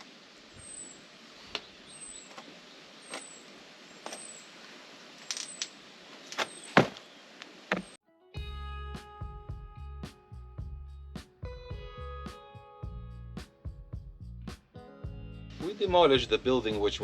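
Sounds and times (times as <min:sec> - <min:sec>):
steady hiss: 0:00.0 - 0:06.4
music: 0:08.0 - 0:17.0.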